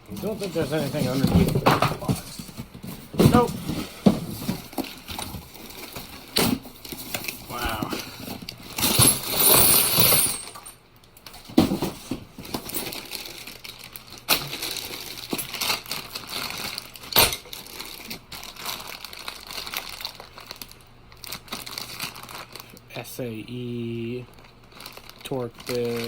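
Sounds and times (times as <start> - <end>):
plastic packaging rustling: 0.0 - 10.6, 11.2 - 22.8, 23.5 - 26.0
metal tools clinking together: 8.8 - 10.8.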